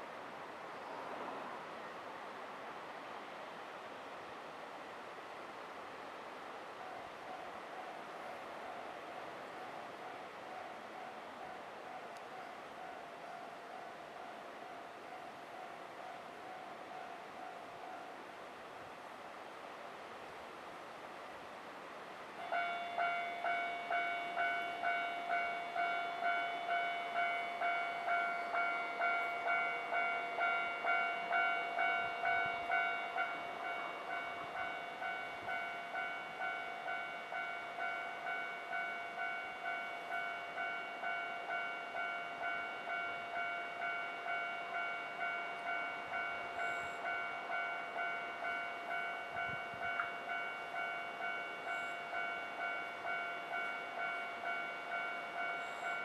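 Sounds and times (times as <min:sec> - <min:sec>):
level-crossing warning bell ringing: 0:22.4 - 0:56.0.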